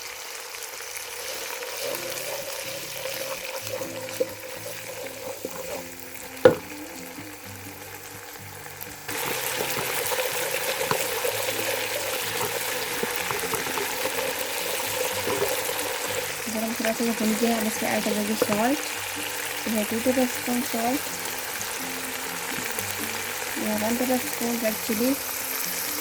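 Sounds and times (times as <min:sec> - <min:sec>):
food sizzling in oil: 0:00.0 - 0:26.0
sharp knock: 0:06.5 - 0:06.7.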